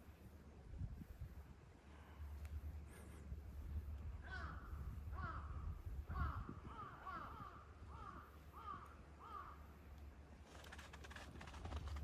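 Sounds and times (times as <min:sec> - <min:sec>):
crow cawing: 0:05.2 - 0:05.5, 0:06.2 - 0:09.6
faint rustle: 0:09.9 - 0:12.0.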